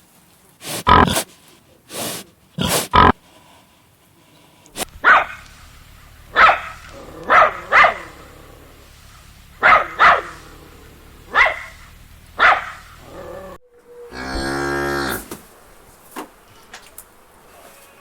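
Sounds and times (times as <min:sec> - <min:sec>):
dog barking: 0:04.8 - 0:13.6.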